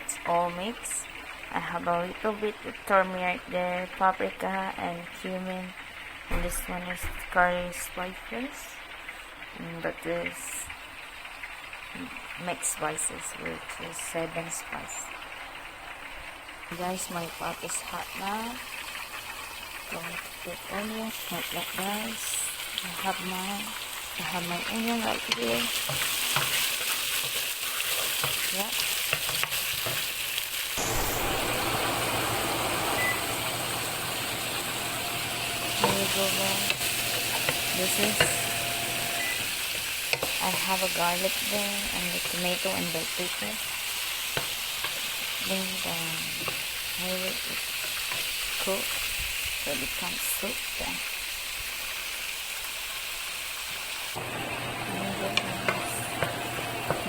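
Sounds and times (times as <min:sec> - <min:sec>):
onions sizzling in oil: 0:00.0 - 0:57.0.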